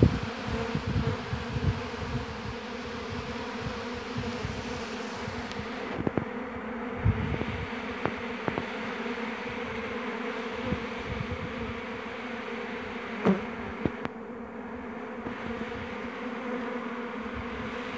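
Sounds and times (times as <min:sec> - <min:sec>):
honeybees buzzing: 0:00.0 - 0:17.9
short louder buzzes and clicks: 0:02.1 - 0:09.9, 0:13.2 - 0:14.3.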